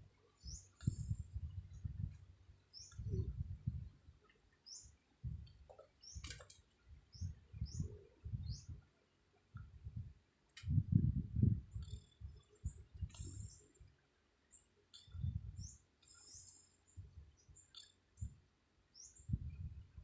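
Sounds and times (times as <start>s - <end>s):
small bird chirping: 0.3s - 3.9s, 4.6s - 6.5s, 7.1s - 8.8s, 11.4s - 13.9s, 14.5s - 19.6s.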